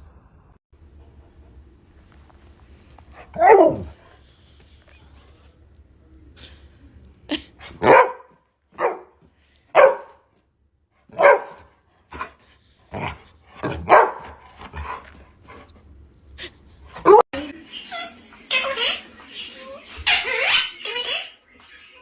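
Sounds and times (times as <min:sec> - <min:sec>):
dog barking: 0:03.3 - 0:04.0, 0:07.7 - 0:10.3, 0:11.1 - 0:15.1, 0:17.0 - 0:17.2.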